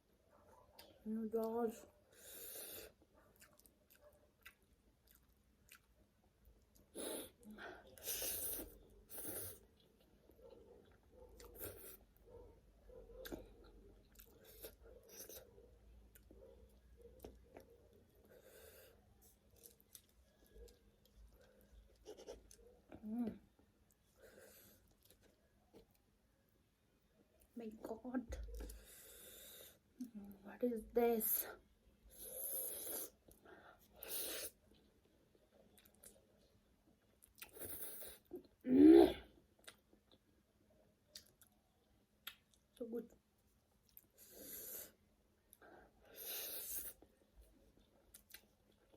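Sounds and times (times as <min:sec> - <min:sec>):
chewing noodles: 0:01.8 - 0:12.3, 0:13.1 - 0:23.0, 0:32.1 - 0:38.6, 0:41.0 - 0:42.8, 0:43.8 - 0:48.9
mouth clicks and smacks: 0:42.2 - 0:42.8.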